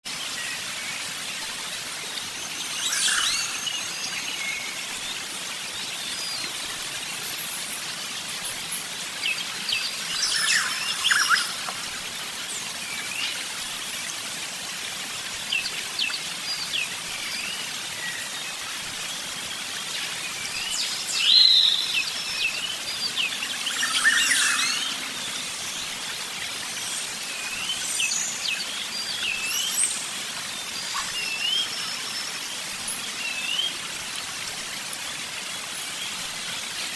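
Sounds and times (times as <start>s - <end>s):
songbirds chirping and singing: 19.2s - 26.0s.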